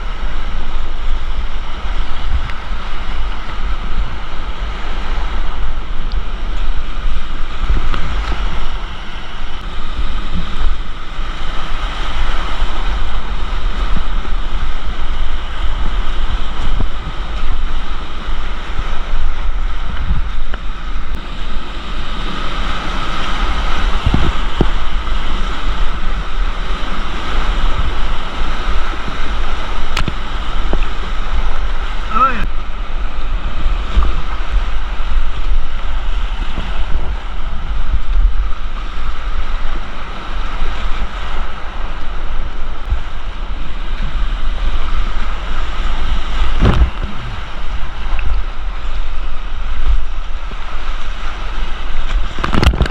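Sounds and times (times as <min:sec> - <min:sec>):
creek whitewater rushing: 0:00.0 - 0:52.9
wind buffeting microphone: 0:00.0 - 0:52.9.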